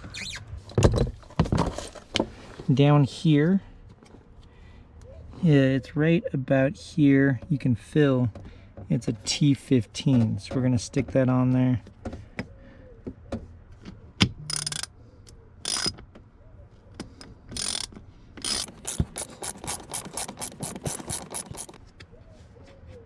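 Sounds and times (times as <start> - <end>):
ratchet clicking and rasping: 15.6 - 16.0, 17.5 - 21.8.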